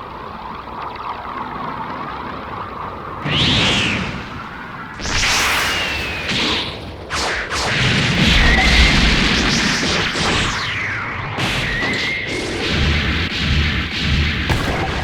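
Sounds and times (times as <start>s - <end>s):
rumbling blast: 4.9s - 15.0s
fight hits: 14.1s - 15.0s.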